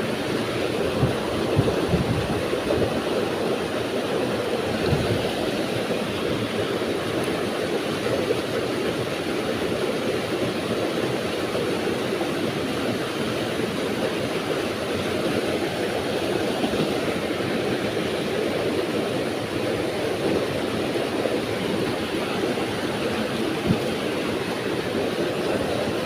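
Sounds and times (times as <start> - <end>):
steady rushing noise: 0.0 - 26.0.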